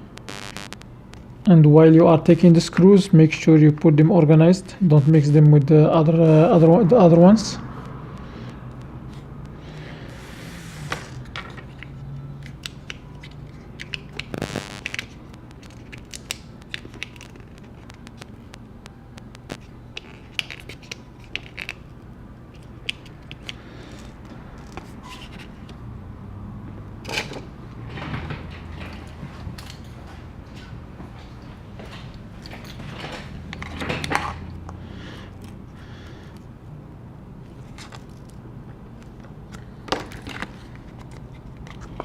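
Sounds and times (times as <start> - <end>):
short scrape: 10.1 - 11.2.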